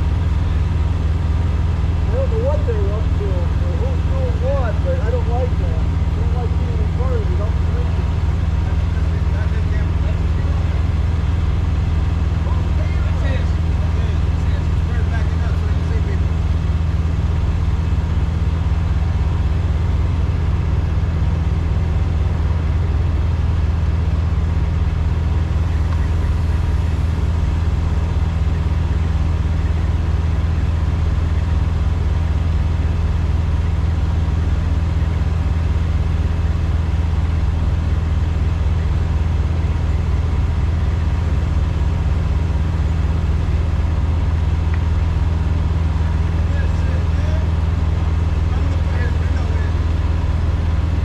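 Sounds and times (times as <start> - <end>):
diesel truck engine running: 0.0 - 51.0.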